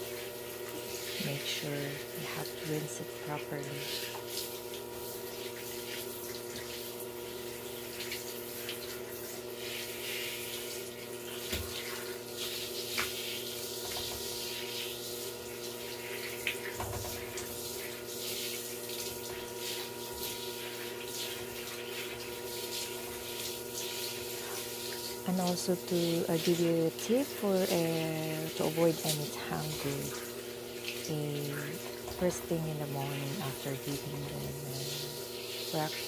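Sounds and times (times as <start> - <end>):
water running: 0.0 - 36.0
constant hum: 13.8 - 36.0.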